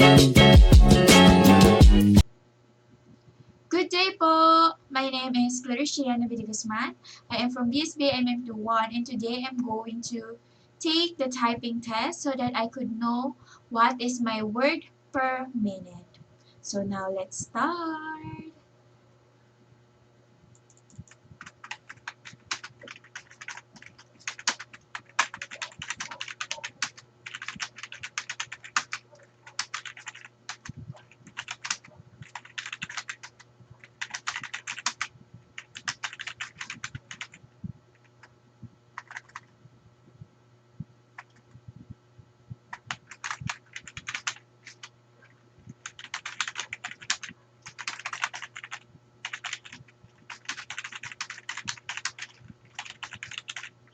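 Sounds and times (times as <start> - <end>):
fast typing on keyboard: 20.6 - 37.4, 39.0 - 39.5, 41.2 - 41.5, 42.7 - 44.9, 45.8 - 53.9.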